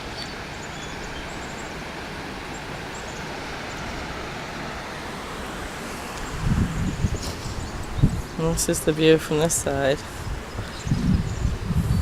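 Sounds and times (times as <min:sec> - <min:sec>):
waterfall rushing: 0:00.0 - 0:10.7
faint bird chirps: 0:00.1 - 0:01.7.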